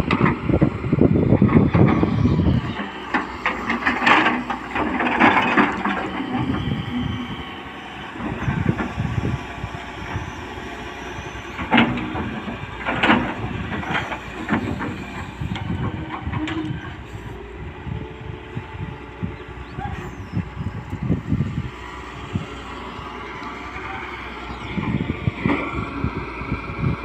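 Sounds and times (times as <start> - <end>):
diesel engine running: 0.0 - 27.0.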